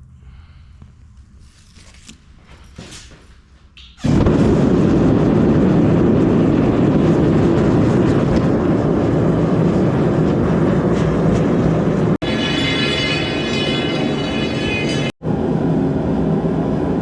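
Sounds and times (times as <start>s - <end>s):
forge roaring: 4.0s - 17.0s.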